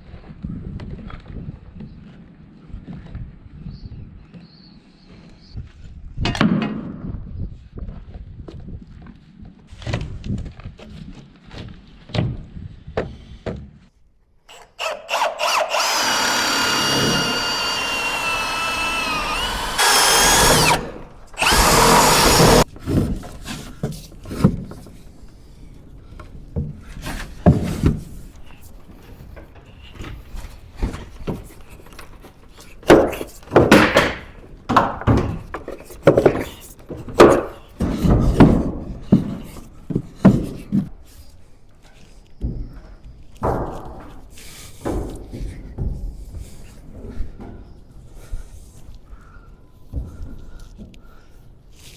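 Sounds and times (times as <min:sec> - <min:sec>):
power drill whining: 0:14.5 - 0:22.7
scraping rubbing noises: 0:14.5 - 0:42.2
short knocks: 0:26.6 - 0:39.3.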